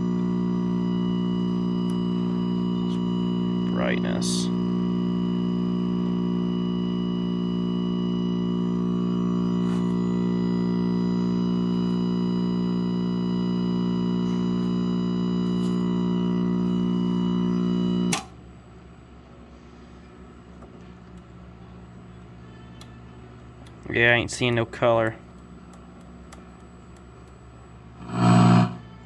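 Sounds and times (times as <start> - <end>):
television mains buzz: 0.0 - 29.0
switch click: 18.0 - 18.4.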